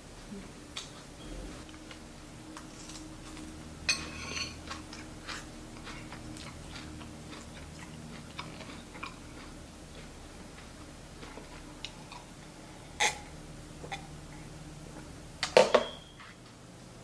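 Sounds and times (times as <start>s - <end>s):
steady low hum: 0.0s - 17.0s
loud ringing clink: 15.6s - 16.2s.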